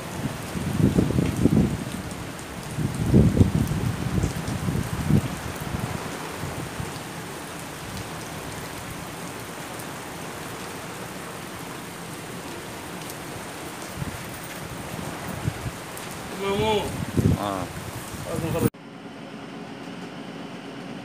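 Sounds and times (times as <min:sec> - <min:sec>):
heavy rain pouring: 0:00.0 - 0:18.8.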